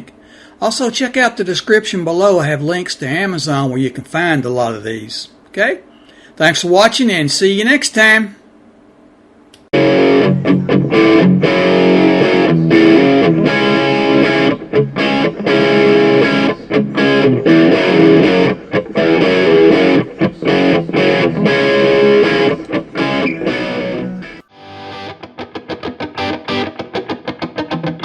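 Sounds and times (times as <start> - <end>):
distorted electric guitar: 9.8 - 28.0.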